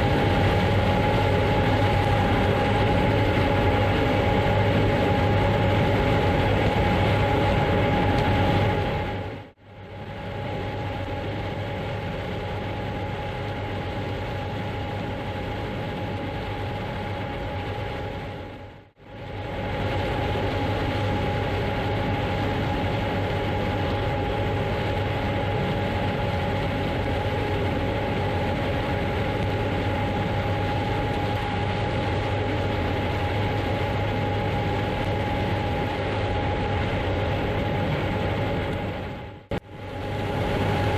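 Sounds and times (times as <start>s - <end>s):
combine harvester engine drone: 0.0s - 40.9s
machinery whine: 0.0s - 40.9s.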